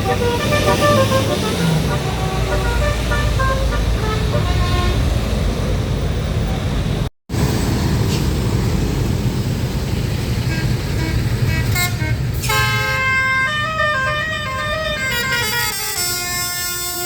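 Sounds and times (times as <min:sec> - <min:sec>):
bus air horn playing tune: 0:00.0 - 0:05.1, 0:10.5 - 0:17.0
bus engine rumble: 0:00.0 - 0:17.0
traffic: 0:00.0 - 0:17.0.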